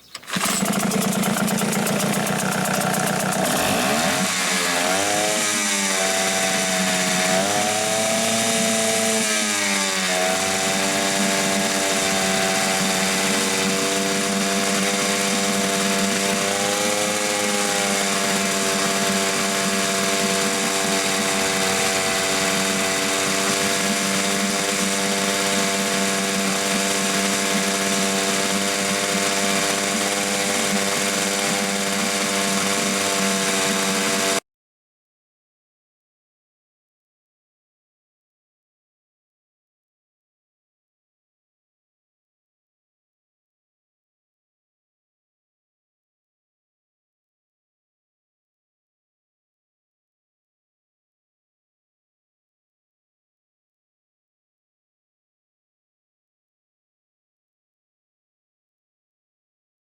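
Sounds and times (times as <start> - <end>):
outboard motor running: 0.0 - 34.4.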